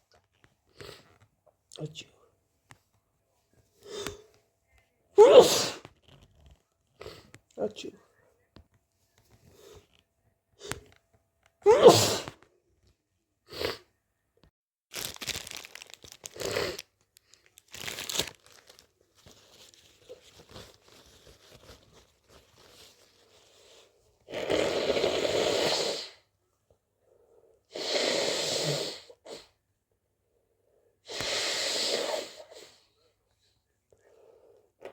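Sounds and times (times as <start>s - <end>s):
person sneezing: 5.2s - 5.8s, 11.6s - 12.4s
person sniffling: 11.6s - 12.3s
breath rushing through nose: 31.0s - 32.8s.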